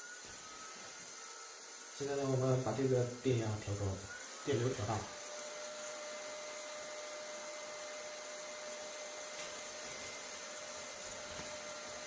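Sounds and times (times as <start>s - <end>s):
power supply whirring hiss: 0.0s - 12.0s.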